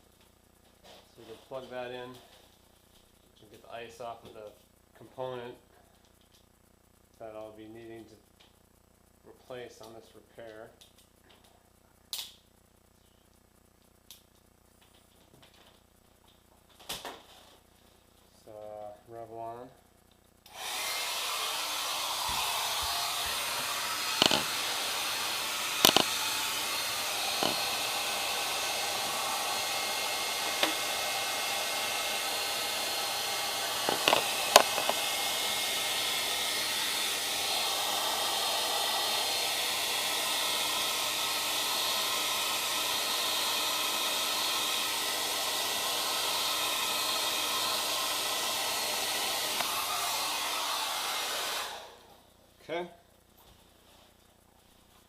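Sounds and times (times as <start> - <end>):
hair dryer running: 20.5 - 52.2.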